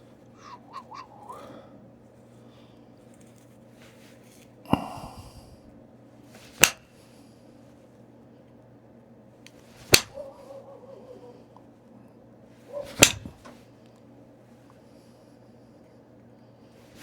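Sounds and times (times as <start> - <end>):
stone flake knapping clicks: 6.6 - 6.8, 9.9 - 10.2, 12.9 - 13.4.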